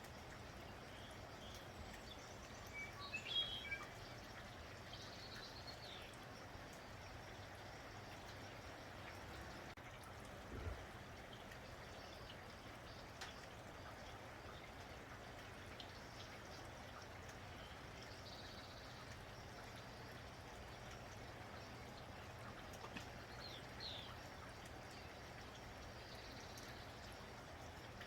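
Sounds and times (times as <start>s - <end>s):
faint steady rain: 0.0s - 28.0s
water dripping: 0.0s - 28.0s
bird chirping: 0.9s - 6.2s.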